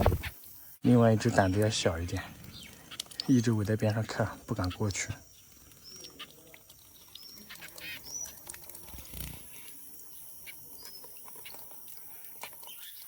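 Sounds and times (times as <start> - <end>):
dull thump: 0.0 - 0.3
young songbirds chirping: 0.0 - 13.0.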